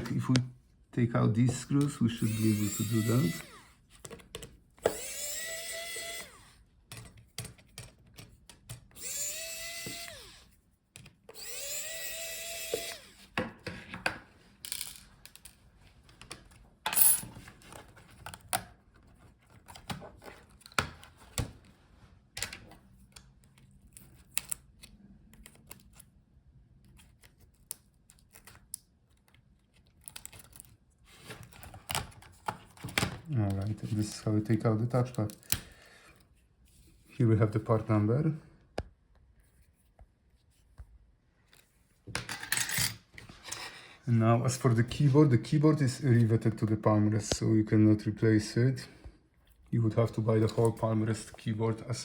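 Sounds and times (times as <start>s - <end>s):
electric screwdriver spinning: 2.1s - 3.8s, 4.8s - 6.6s, 9.0s - 10.5s, 11.3s - 13.3s
clicks of handling small parts: 13.9s - 21.1s.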